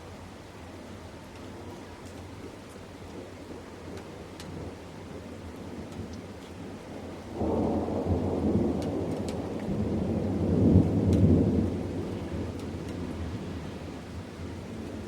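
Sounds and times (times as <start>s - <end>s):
light rain: 0.0s - 15.0s
raindrop ticks: 1.3s - 13.4s
thunder rumbling: 7.4s - 15.0s.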